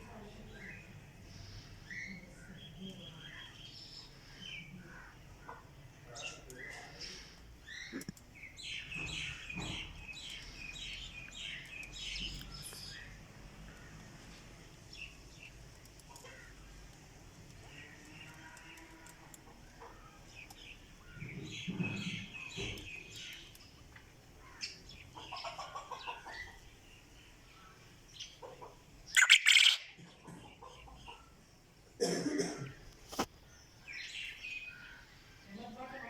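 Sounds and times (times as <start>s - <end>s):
quail chirping and calling: 24.4s - 26.7s, 27.6s - 31.4s.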